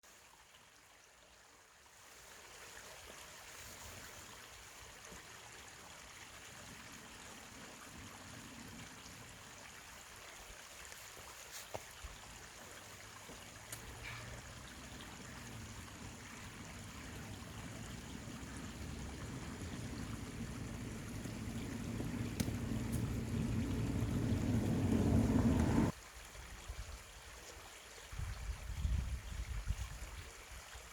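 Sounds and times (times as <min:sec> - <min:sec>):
stream water rushing: 0:10.7 - 0:25.9
faint clicks: 0:16.8 - 0:25.9.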